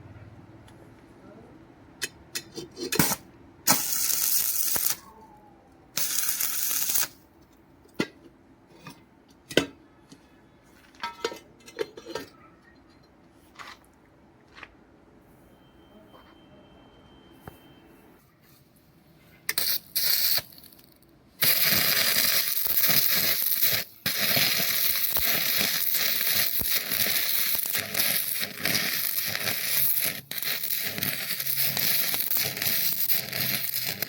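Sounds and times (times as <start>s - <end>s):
loud hissing bursts: 19.5s - 20.6s, 21.4s - 34.0s.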